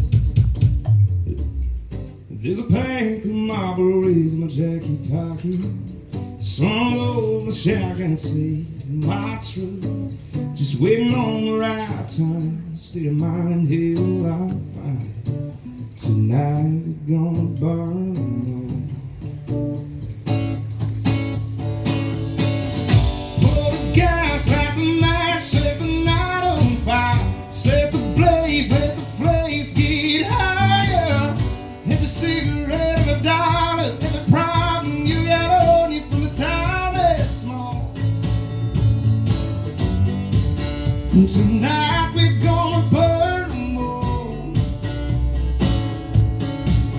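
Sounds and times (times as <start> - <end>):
steady drum beat: 0.0 - 2.2, 20.3 - 46.9
amplified guitar: 0.0 - 46.9
male singer belting: 1.1 - 15.2, 15.9 - 19.2, 23.0 - 38.2, 40.8 - 45.0.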